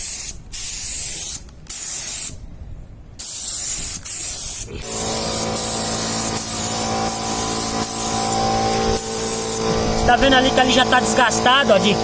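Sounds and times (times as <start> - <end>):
paint spray gun hissing: 0.0 - 2.4, 3.2 - 12.0
machine hum: 4.8 - 12.0.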